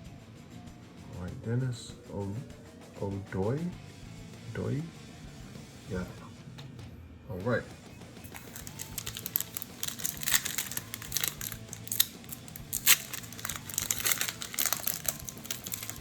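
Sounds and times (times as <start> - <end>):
plastic wrapper crinkling: 8.3 - 16.0.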